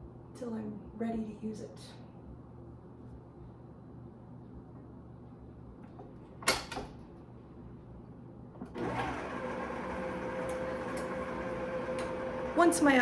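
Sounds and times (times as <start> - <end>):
electric mixer motor humming: 8.8 - 12.7.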